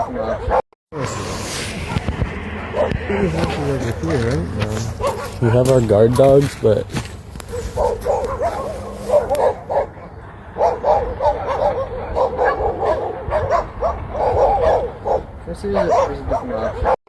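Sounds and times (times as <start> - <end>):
dogs yipping and barking: 0.0 - 0.6, 1.8 - 3.6, 4.7 - 6.0, 7.4 - 17.0.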